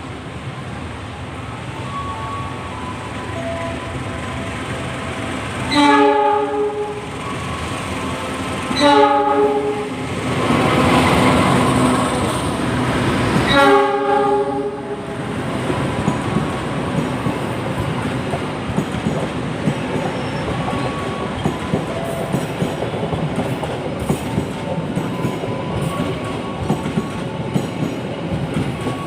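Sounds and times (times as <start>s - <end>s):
train wheels rumbling on rails: 0.0s - 29.0s
train horn blasts: 5.7s - 7.2s, 8.7s - 10.1s, 13.5s - 15.0s.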